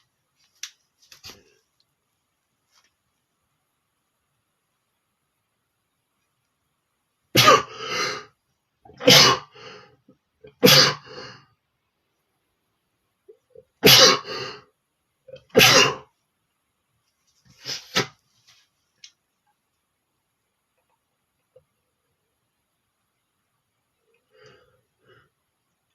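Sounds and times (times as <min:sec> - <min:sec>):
man sneezing: 0:10.6 - 0:11.1.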